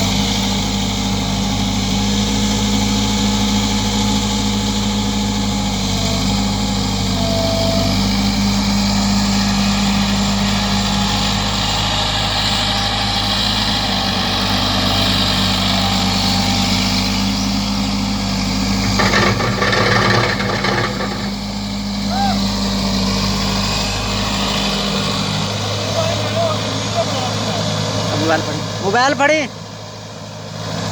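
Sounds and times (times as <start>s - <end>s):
excavator diesel engine running: 0.1s - 30.6s.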